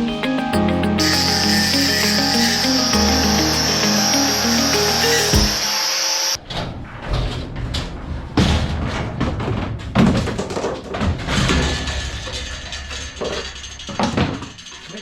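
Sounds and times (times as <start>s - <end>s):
music: 0.0s - 5.7s
steady high chirping: 0.0s - 6.4s
objects knocking and clattering: 7.6s - 15.0s.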